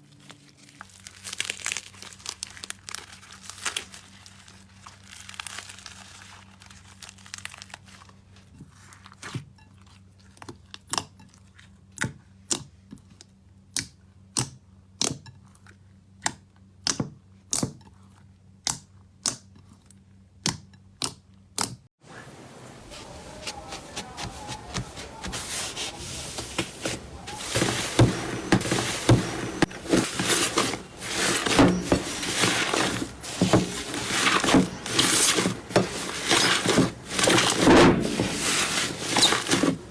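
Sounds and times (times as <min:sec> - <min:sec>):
slime popping and crackling: 0:00.8 - 0:07.6.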